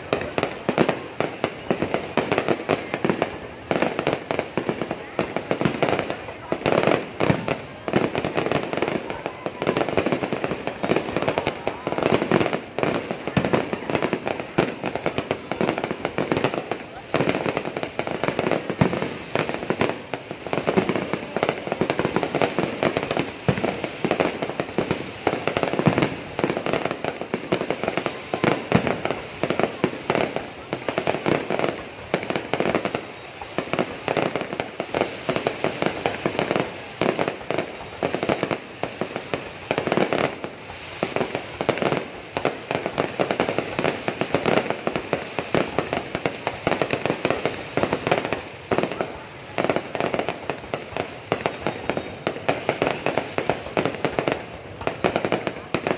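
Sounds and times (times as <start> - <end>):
voices: 0.0 - 38.7
fireworks bangs and crackles: 0.0 - 55.9.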